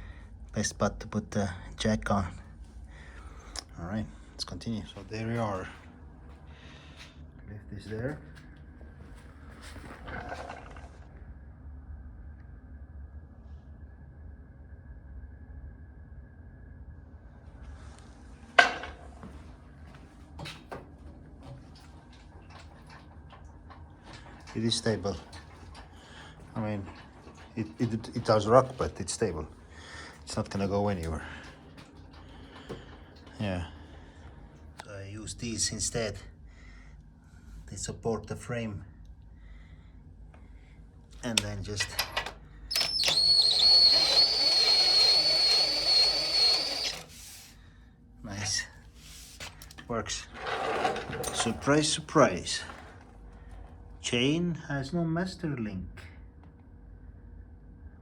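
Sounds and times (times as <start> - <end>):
electric motor whining: 42.7 - 47.4.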